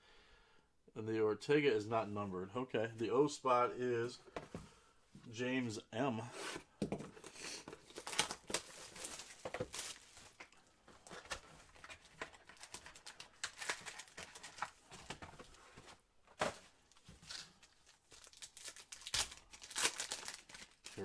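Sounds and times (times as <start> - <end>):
card packaging crinkling: 6.4 - 21.0.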